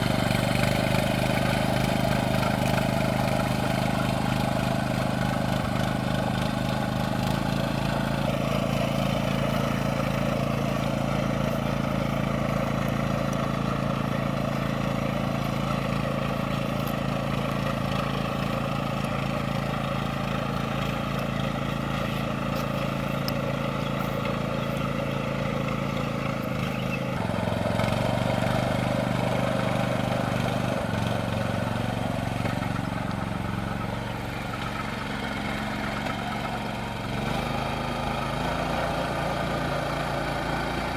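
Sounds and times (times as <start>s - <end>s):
engine running steadily: 0.0s - 40.9s.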